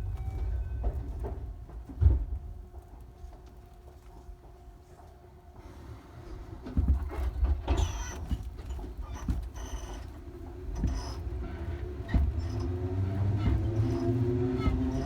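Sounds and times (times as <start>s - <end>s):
train rumbling: 0.0s - 4.7s, 5.6s - 15.0s
traction motor whine: 10.9s - 15.0s.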